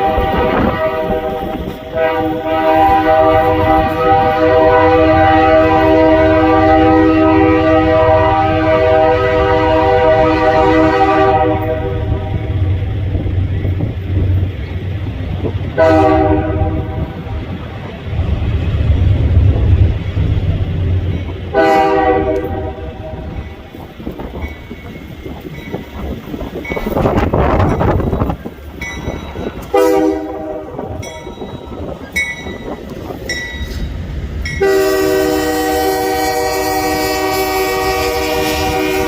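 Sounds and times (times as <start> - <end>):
locomotive air horn blasts: 0.0 - 12.6, 15.8 - 17.4, 21.5 - 23.4, 29.7 - 31.0, 34.6 - 39.0
low rumble of train: 0.0 - 39.0.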